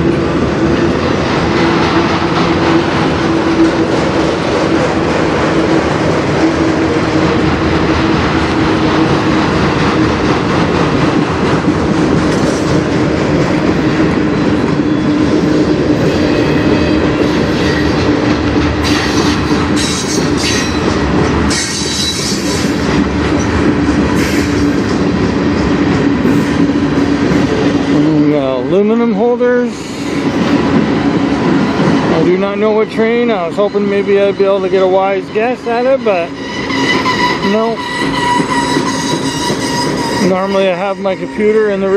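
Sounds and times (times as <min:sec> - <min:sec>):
train wheels clattering on rails: 0:00.0 - 0:41.9
wheels squealing: 0:18.8 - 0:22.8, 0:35.4 - 0:41.5.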